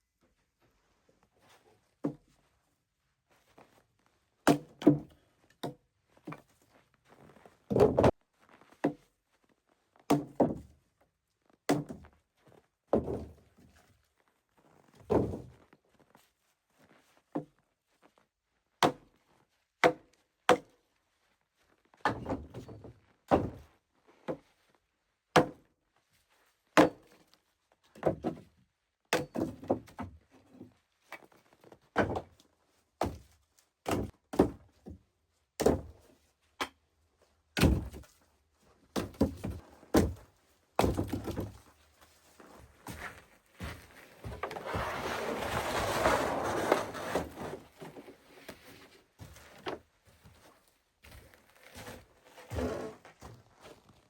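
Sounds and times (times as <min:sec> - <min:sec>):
short rustle or scrape: 0:43.8 - 0:49.0.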